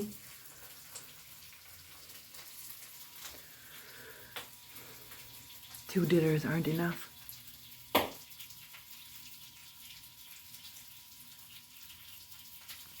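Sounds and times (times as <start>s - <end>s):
running water: 0.0s - 13.0s.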